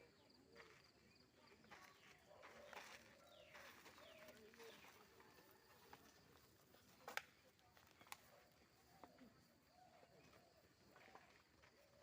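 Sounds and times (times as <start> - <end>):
bird calls: 1.8 - 5.0.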